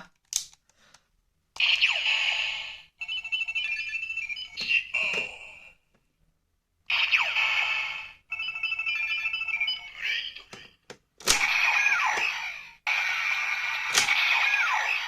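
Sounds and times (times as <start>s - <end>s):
toy electronic sound effects: 1.6s - 5.2s, 6.9s - 10.6s, 11.3s - 15.0s.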